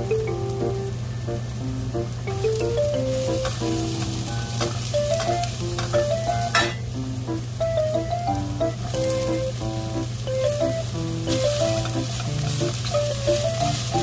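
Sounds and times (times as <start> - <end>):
gentle music melody: 0.0 - 14.0
food sizzling in a pan: 1.6 - 7.2, 8.7 - 14.0
utensil clicking against pan: 3.4 - 6.8.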